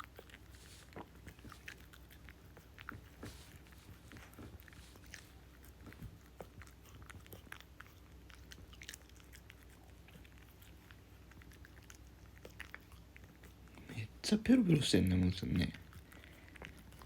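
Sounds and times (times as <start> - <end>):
dog chewing and licking: 0.0 - 17.0.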